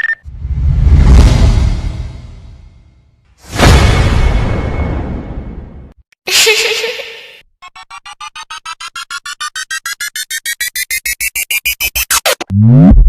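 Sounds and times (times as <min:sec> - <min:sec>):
short noisy hit: 0:01.0 - 0:05.9
electronic beeps rising riser: 0:07.7 - 0:13.0.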